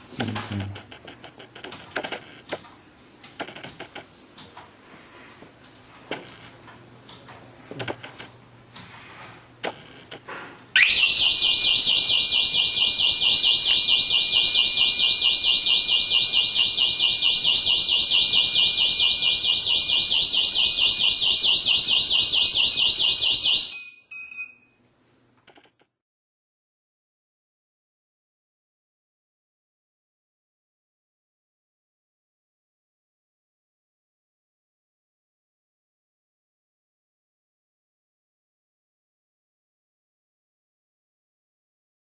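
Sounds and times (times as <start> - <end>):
warbling alarm siren: 10.8 - 24.0.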